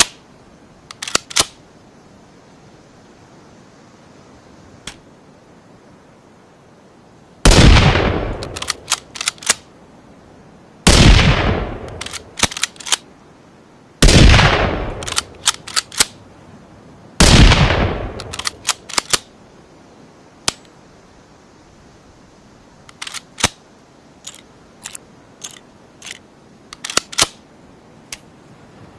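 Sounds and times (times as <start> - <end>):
sharp clicks: 0.8 - 1.6, 8.3 - 9.7, 11.8 - 13.0, 14.9 - 16.2, 18.1 - 19.3, 20.4 - 20.7, 22.8 - 23.6, 24.2 - 27.4
rifle gunshots: 7.5 - 8.9, 10.9 - 12.6, 14.0 - 16.0, 17.2 - 19.2.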